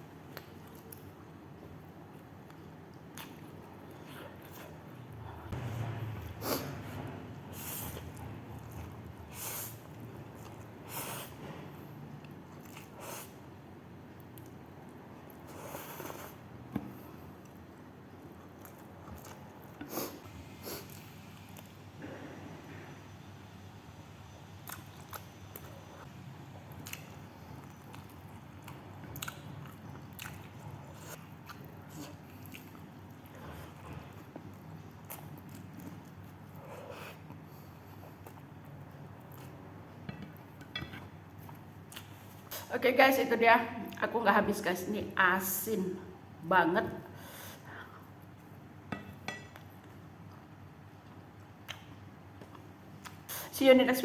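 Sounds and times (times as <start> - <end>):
person chewing food: 0.3 - 6.8, 7.8 - 11.3, 12.0 - 13.3, 14.1 - 21.8, 24.6 - 42.6, 49.1 - 53.4.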